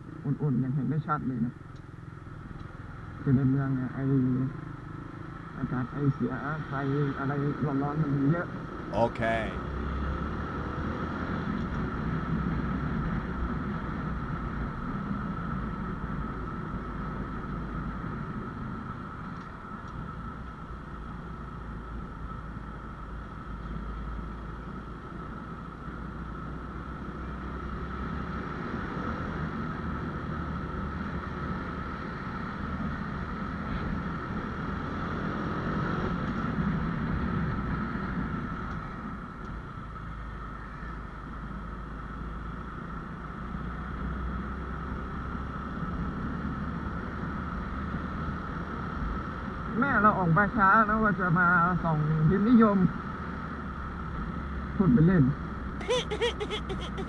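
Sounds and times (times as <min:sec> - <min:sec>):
wind and road noise: 0:00.0 - 0:57.0.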